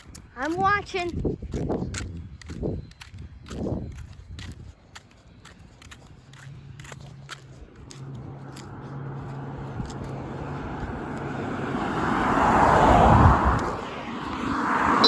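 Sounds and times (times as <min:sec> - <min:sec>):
car driving past: 0:07.9 - 0:15.0.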